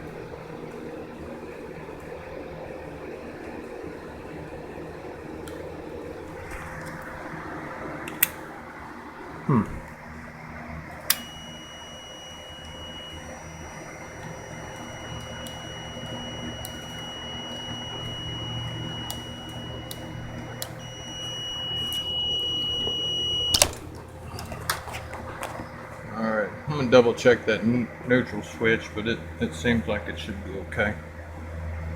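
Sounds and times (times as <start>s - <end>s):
low steady hum: 0.0s - 31.9s
sharp click: 11.1s - 11.5s
multimeter continuity beep: 11.1s - 23.9s.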